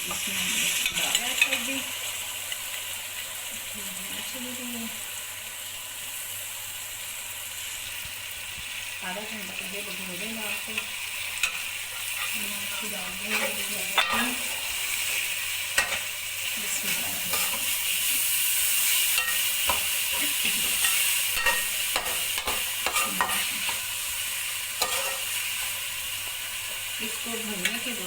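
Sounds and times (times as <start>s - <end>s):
food sizzling in hot oil: 0.0s - 28.0s
spoon knocking and scraping pan: 10.8s - 18.3s, 19.1s - 24.0s, 24.8s - 25.9s.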